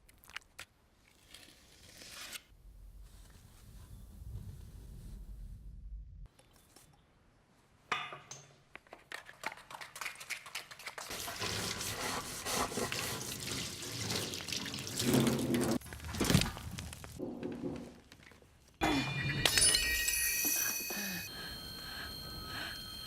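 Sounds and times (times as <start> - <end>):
running water with splashes: 12.5 - 15.8.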